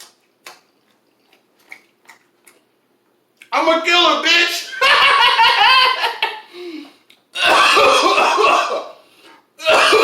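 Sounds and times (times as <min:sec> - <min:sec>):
man coughing: 0:07.4 - 0:09.0, 0:09.6 - 0:10.0.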